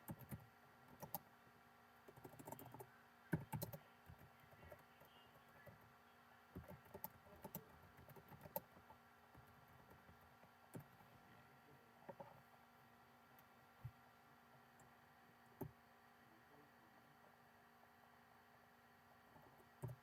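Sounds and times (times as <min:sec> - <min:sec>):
typing on computer keyboard: 0:00.0 - 0:01.2, 0:02.1 - 0:05.8, 0:06.6 - 0:11.1, 0:19.8 - 0:20.0
low electrical hum: 0:00.0 - 0:20.0.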